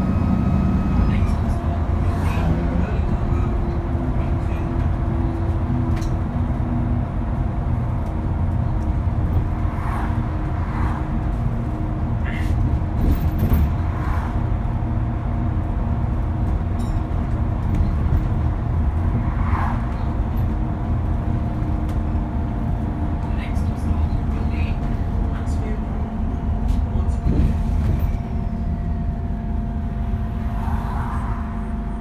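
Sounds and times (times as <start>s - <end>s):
turbocharger whine: 0.0s - 1.6s
bus engine rumble: 0.0s - 32.0s.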